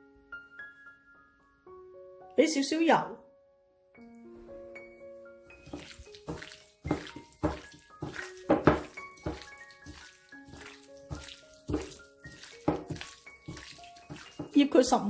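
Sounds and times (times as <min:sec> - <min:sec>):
background music: 0:00.0 - 0:15.0
wet squelching of meat mixed by hand: 0:05.5 - 0:15.0.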